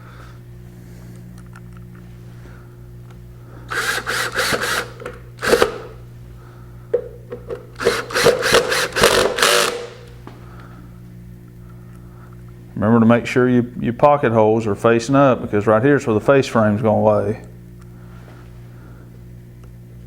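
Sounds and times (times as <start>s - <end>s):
power drill driving screws: 3.7s - 5.9s, 7.8s - 10.1s.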